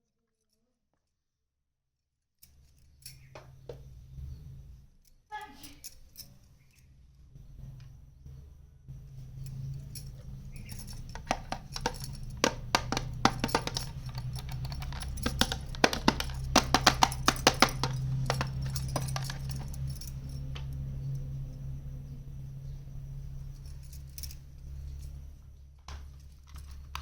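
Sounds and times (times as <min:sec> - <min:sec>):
plastic toy pieces clattering: 0:10.8 - 0:19.8.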